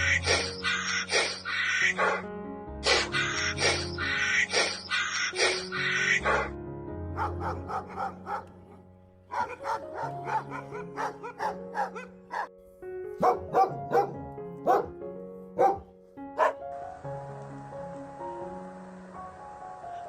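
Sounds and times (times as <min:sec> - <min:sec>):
background music: 0:00.0 - 0:20.0.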